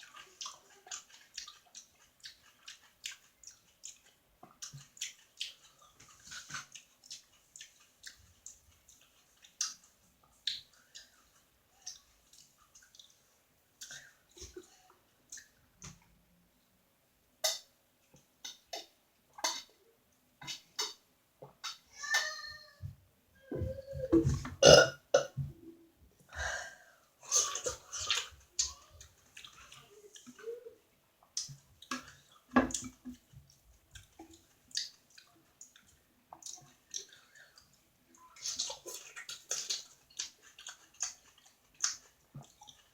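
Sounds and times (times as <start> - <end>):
person chewing crunchy vegetables: 0.0 - 13.2, 27.5 - 30.5, 34.0 - 42.9.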